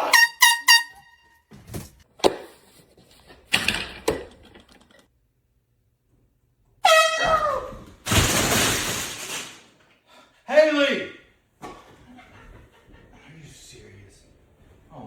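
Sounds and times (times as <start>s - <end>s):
canned air horn blasting: 0.0s - 1.5s, 6.8s - 7.3s.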